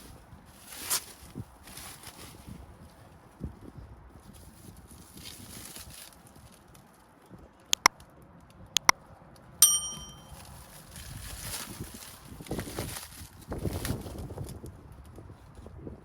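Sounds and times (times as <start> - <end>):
metallic clink: 9.6 - 10.4.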